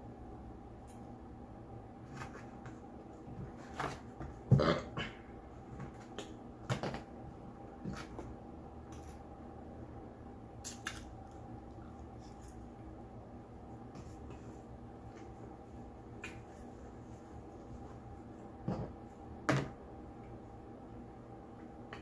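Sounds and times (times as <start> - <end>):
loud burp: 4.5 - 5.2
faint clicks and eating noises: 10.6 - 12.9.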